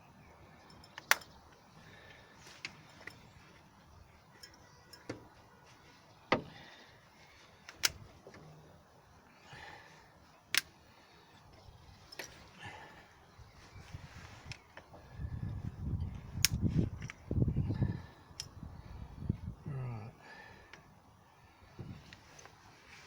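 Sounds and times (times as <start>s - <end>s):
hand tools clicking and knocking: 4.3s - 5.4s.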